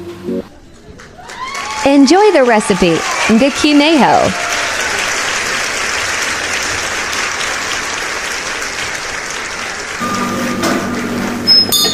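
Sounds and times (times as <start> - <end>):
applause: 0.7 - 10.0
thin high tone: 10.0 - 11.9.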